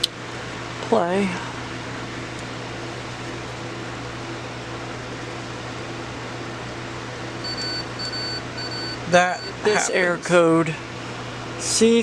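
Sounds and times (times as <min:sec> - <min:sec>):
high electronic warning beep: 0:07.4 - 0:09.8.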